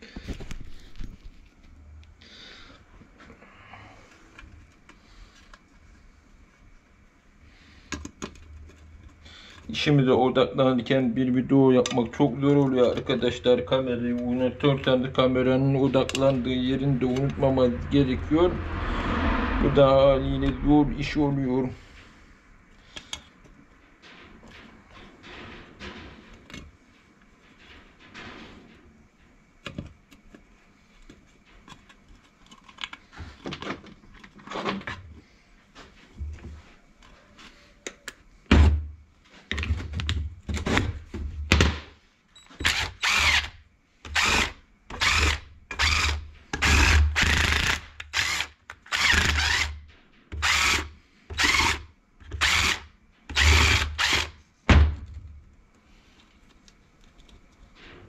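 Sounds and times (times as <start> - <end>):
power tool bursts: 42.6 - 49.8, 50.4 - 51.8, 52.4 - 54.3.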